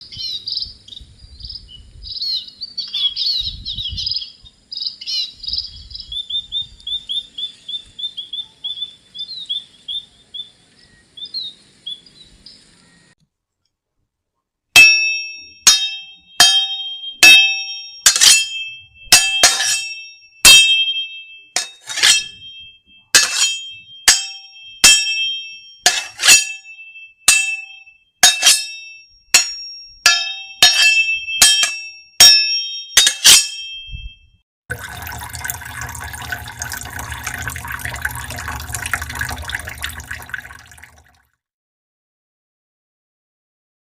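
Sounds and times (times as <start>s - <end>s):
small birds chirping: 0.0s - 13.1s.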